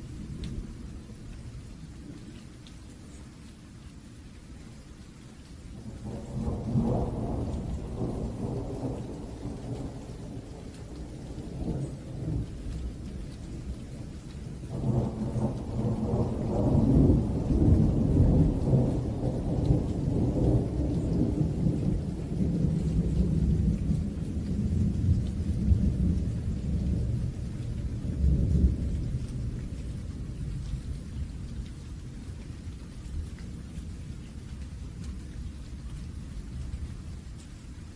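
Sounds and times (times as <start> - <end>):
steady rain falling: 0.0 - 37.9
thunder rolling: 6.0 - 13.2, 14.6 - 30.6.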